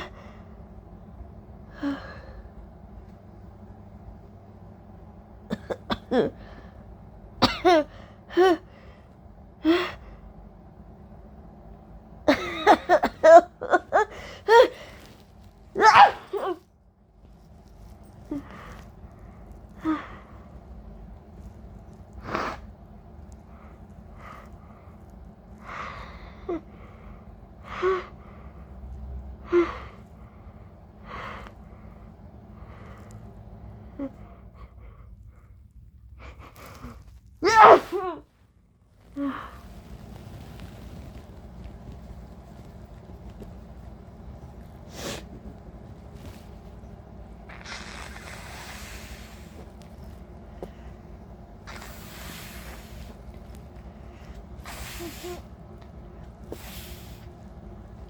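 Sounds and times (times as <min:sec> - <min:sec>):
woman coughing: 0:05.5 - 0:06.4, 0:07.4 - 0:08.6, 0:12.3 - 0:14.8, 0:15.8 - 0:16.6.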